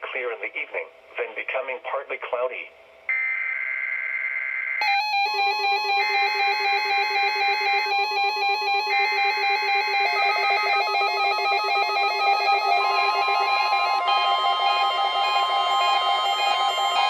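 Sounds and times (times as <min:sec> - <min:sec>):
synthesized ringtone-like tune: 0:04.8 - 0:17.0.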